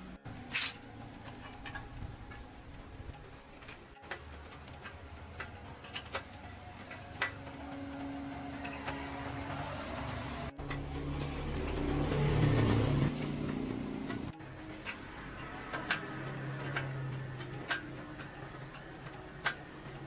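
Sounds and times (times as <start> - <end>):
hand tool clicks and taps: 15.7 - 20.0.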